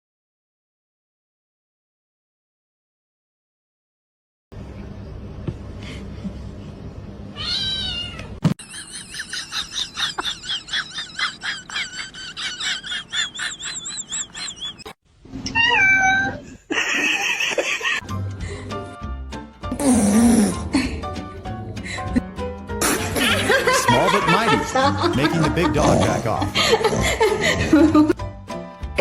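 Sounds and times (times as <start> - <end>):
cats meowing: 7.4 - 8.4, 15.5 - 16.5.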